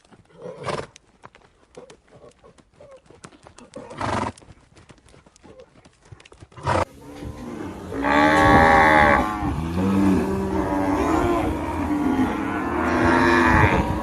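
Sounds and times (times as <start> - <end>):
horse hooves clip-clopping: 0.0 - 7.6.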